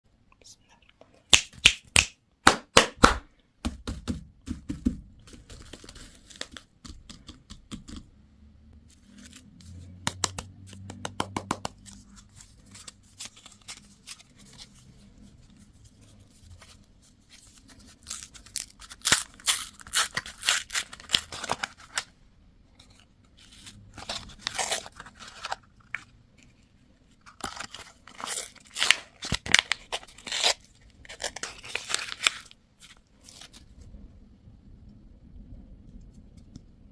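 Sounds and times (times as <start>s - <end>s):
candy wrappers crinkling: 17.5s - 22.1s, 27.2s - 33.8s.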